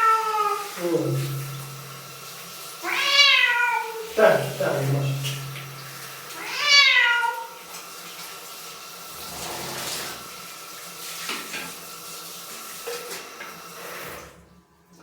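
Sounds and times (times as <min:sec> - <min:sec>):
cat meowing: 0:00.0 - 0:00.7, 0:02.8 - 0:04.1, 0:06.4 - 0:07.6
water running from a tap: 0:00.0 - 0:14.6.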